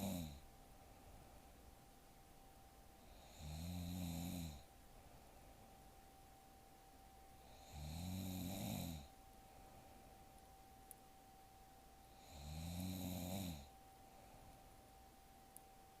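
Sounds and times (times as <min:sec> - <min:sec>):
woman snoring: 0:00.0 - 0:00.4, 0:03.0 - 0:04.7, 0:07.4 - 0:09.1, 0:12.1 - 0:13.7.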